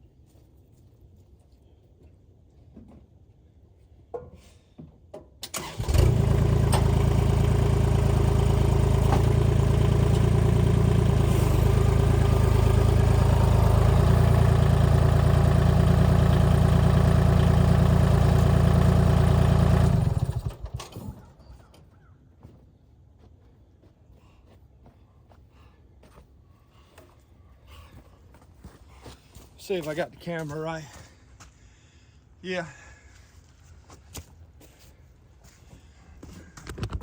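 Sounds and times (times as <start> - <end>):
diesel engine starting and idling: 5.4 - 21.4.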